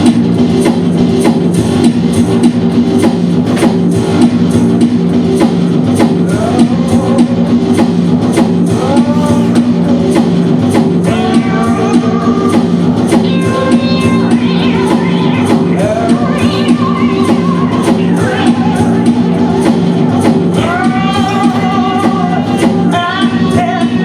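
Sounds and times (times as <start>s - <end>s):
guitar and bass: 0.0s - 24.0s
person singing: 6.2s - 7.8s, 8.6s - 10.3s, 11.0s - 19.3s, 20.6s - 24.0s
drum kit beat: 20.6s - 23.5s.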